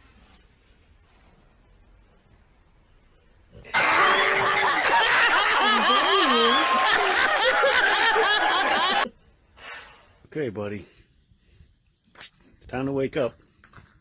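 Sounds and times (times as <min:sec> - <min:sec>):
people laughing loudly: 0:03.7 - 0:09.1.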